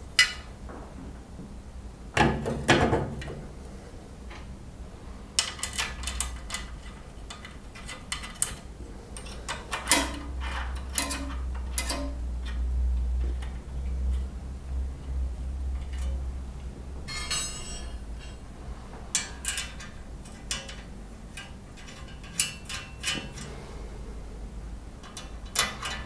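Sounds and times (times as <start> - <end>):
metallic clicks and clinks: 5.4 - 12.6.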